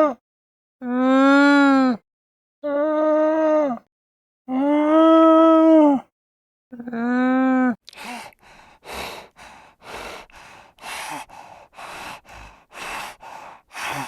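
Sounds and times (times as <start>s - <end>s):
heavy rhythmic breathing: 7.9s - 14.0s.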